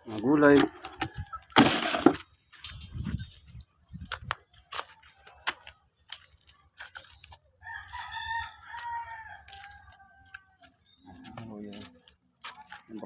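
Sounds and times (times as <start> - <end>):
rooster crowing: 7.6 - 10.6.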